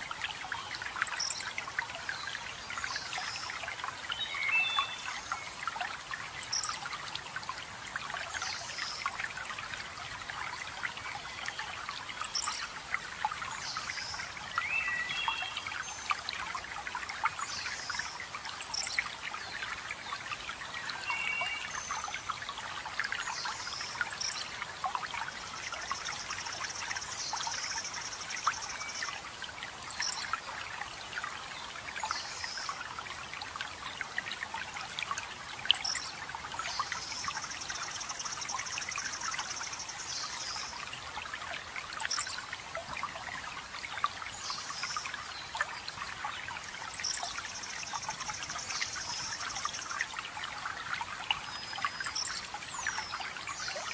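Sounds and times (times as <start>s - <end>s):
water trickling and splashing: 0.0s - 53.9s
songbirds singing: 0.4s - 7.0s, 13.4s - 16.4s.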